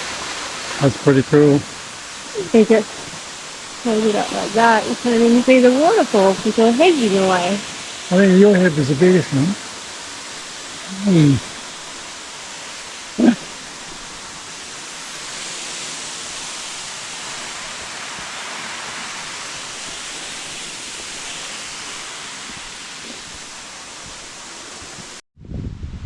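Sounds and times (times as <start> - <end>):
waterfall rushing: 0.0 - 25.2.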